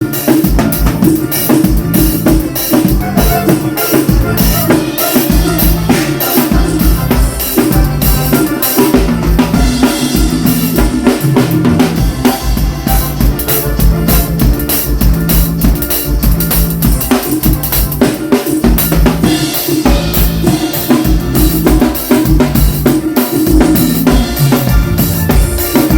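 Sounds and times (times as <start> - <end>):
drum kit playing groove: 0.0 - 25.9
low bass notes: 1.7 - 8.4, 9.0 - 18.0.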